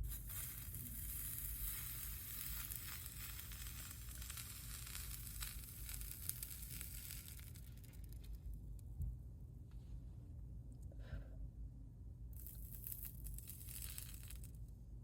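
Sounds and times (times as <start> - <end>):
flux sizzling under soldering iron: 0.0 - 8.4, 12.4 - 14.6.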